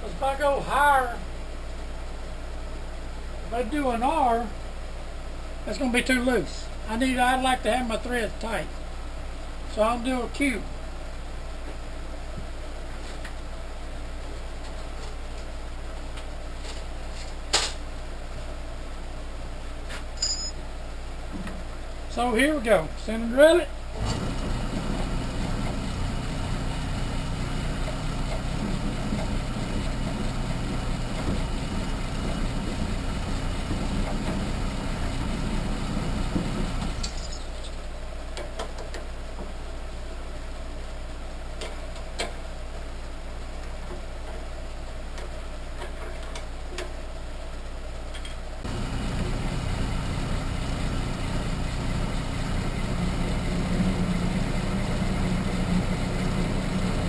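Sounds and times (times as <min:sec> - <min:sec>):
mini lathe running: 0:24.0 - 0:37.0, 0:48.7 - 0:57.0.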